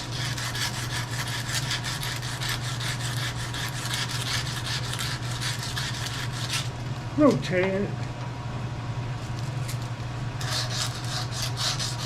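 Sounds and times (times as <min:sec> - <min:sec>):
emery cloth rasping on metal: 0:10.4 - 0:12.0.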